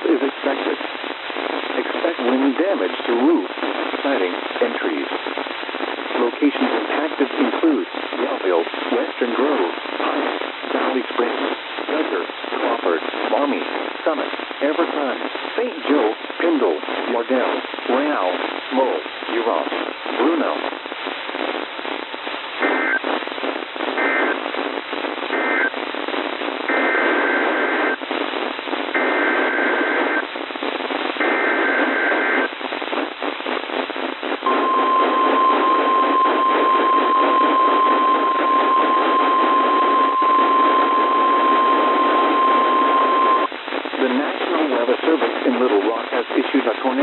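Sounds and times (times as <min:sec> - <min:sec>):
radio static: 0:00.0 - 0:47.0
steady warning alarm tone: 0:34.5 - 0:43.5.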